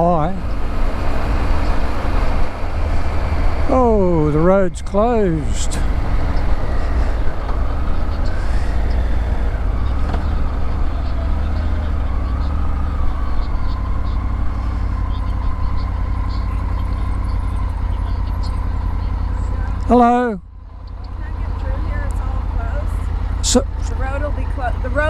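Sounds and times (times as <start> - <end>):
motorcycle engine idling: 0.0 - 25.0.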